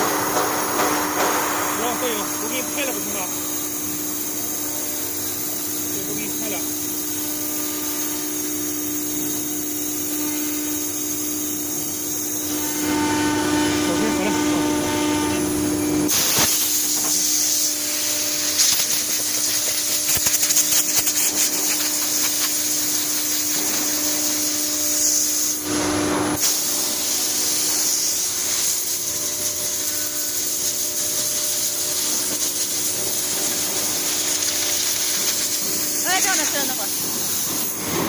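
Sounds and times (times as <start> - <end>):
hiss of cutting and air: 0.0 - 12.6, 16.1 - 25.6, 26.4 - 38.0.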